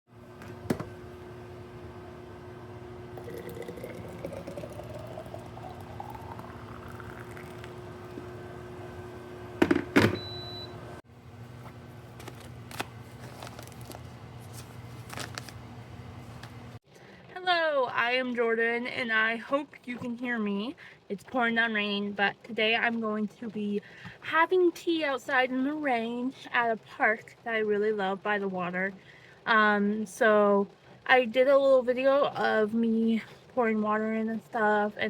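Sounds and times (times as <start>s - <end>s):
electrical hum: 0.1s - 17.1s
water pouring into a vessel: 3.2s - 8.2s.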